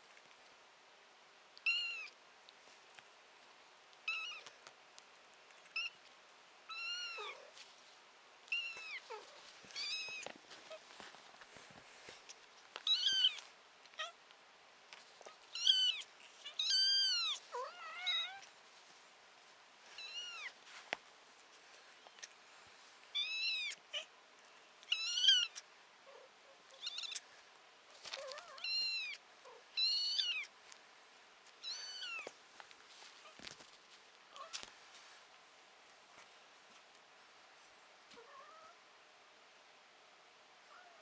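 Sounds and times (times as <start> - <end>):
kitten meowing: 1.6 - 2.2, 4.0 - 4.5, 6.7 - 7.5, 8.5 - 10.8, 12.8 - 13.4, 15.5 - 18.5, 20.0 - 20.6, 23.2 - 24.1, 24.9 - 25.6, 26.8 - 27.2, 28.2 - 29.2, 29.8 - 30.5, 31.6 - 32.3.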